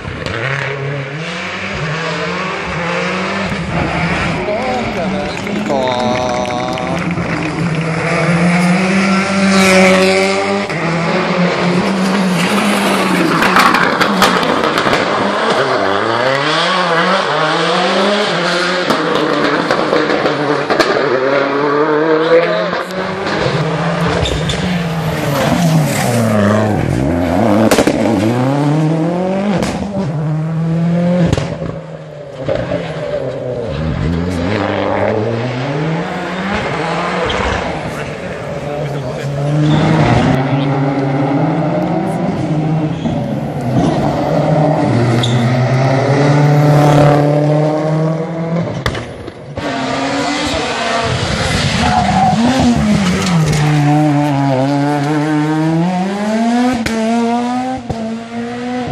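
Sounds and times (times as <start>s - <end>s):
rally car engines revving: 0.0s - 58.9s
exhaust cracks: 22.8s - 28.8s
tyre squeal: 45.1s - 45.6s.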